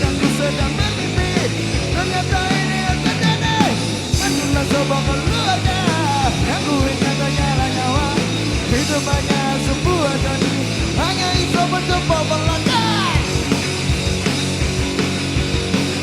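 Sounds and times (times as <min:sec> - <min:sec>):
drums steady beat: 0:00.0 - 0:16.0
rock band playing live: 0:00.0 - 0:16.0.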